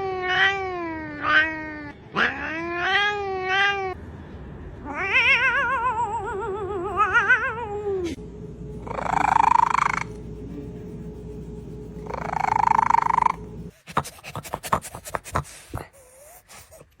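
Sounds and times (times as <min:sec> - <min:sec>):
cat raspy call: 0:00.0 - 0:04.0, 0:04.8 - 0:08.0, 0:08.8 - 0:10.1, 0:12.0 - 0:13.4.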